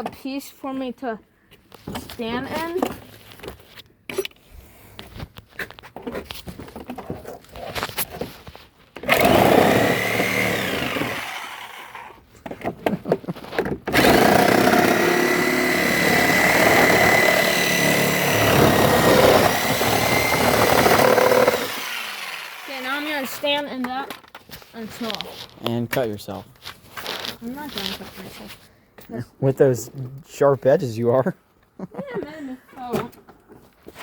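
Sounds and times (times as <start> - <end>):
power saw cutting plastic: 9.0 - 12.2, 13.9 - 23.8.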